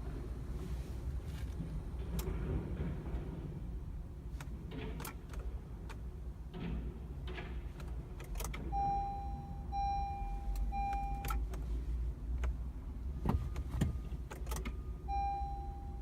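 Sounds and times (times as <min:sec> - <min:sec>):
car warning chime beeping: 0:08.7 - 0:11.5, 0:13.4 - 0:16.0.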